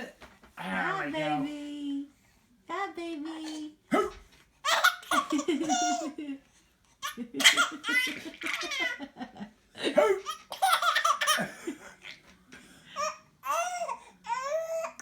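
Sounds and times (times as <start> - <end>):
baby laughing: 4.6 - 6.4, 7.0 - 9.2, 10.0 - 12.3.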